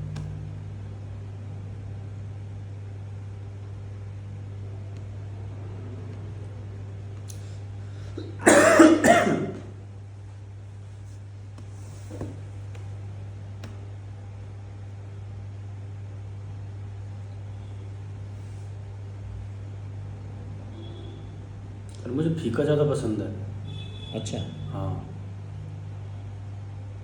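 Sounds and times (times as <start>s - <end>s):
steady low hum: 0.0s - 27.0s
person coughing: 8.2s - 9.7s.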